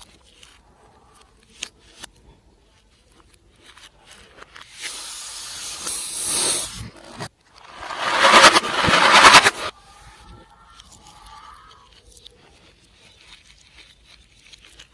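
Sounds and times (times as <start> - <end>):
hiss: 4.7 - 7.2.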